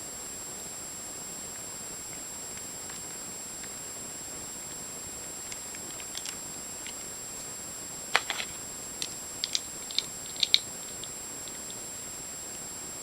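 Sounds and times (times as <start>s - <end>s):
steady hiss: 0.0s - 13.0s
plastic puzzle pieces clicking: 5.5s - 7.0s, 8.2s - 11.8s.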